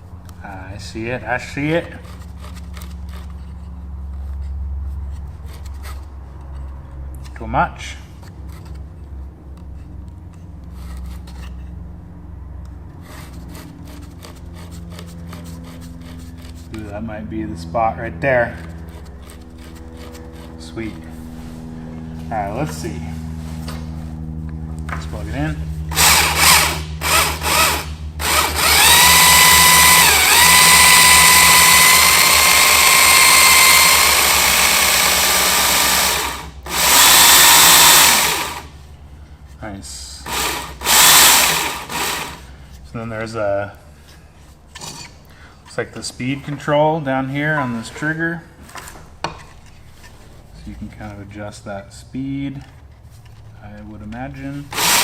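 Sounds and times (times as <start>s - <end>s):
steady low hum: 0.0s - 55.0s
rubbing and scraping: 1.7s - 6.9s, 9.7s - 11.8s, 12.9s - 17.1s, 18.5s - 24.3s
electric knife sharpener whining: 25.9s - 38.7s, 40.3s - 42.5s, 54.7s - 55.0s.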